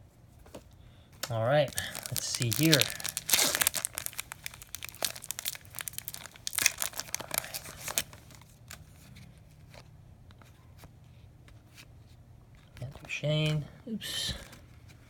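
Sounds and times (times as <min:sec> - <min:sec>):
plastic wrapper crinkling and tearing: 0:01.2 - 0:08.9
cards being handled: 0:01.2 - 0:09.9.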